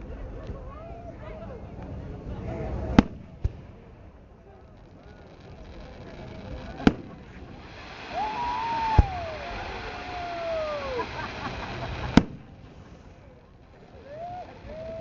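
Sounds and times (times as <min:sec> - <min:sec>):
fireworks banging: 0:02.9 - 0:03.8, 0:04.6 - 0:15.0
steady hiss: 0:04.5 - 0:15.0
woman whooing: 0:08.1 - 0:11.1, 0:14.0 - 0:15.0.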